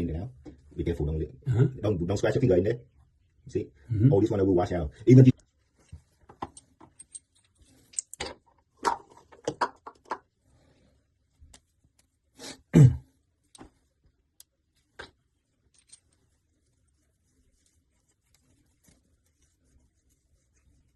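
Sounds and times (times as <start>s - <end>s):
metal tools clinking: 15.6s - 16.2s.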